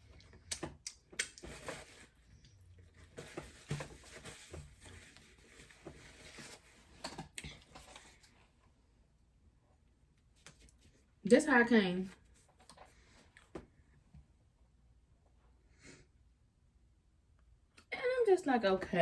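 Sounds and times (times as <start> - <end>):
paper rustling: 1.3 - 2.4, 3.0 - 8.4.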